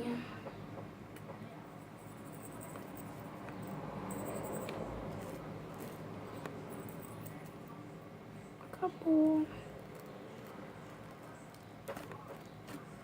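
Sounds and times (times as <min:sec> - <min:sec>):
small decorations rattling: 0:01.6 - 0:07.7.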